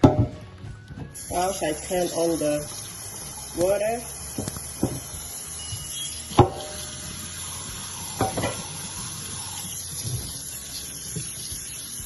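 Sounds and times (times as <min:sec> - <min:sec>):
tap water running into strainer: 0:01.2 - 0:12.0
kitchenware clinking: 0:08.2 - 0:08.8.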